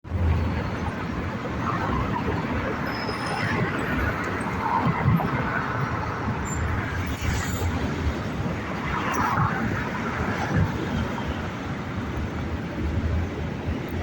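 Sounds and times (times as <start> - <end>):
metro station rumble and hum: 0.0 - 14.0.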